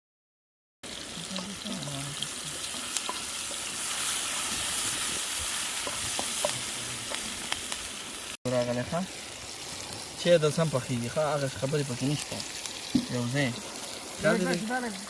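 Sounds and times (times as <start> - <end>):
meat sizzling: 0.8 - 15.0.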